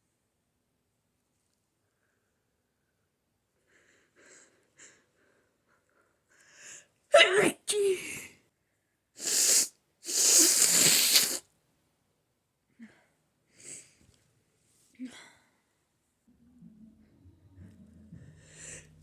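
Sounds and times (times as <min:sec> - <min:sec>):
person sneezing: 0:09.2 - 0:11.4.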